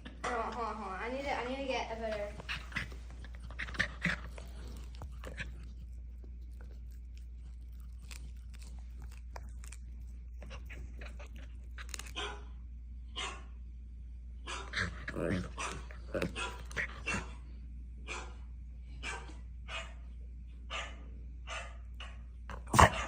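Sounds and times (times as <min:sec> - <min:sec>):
steady low hum: 0:00.0 - 0:23.0
dog chewing and crunching: 0:02.1 - 0:12.5, 0:14.6 - 0:17.3, 0:22.5 - 0:23.0.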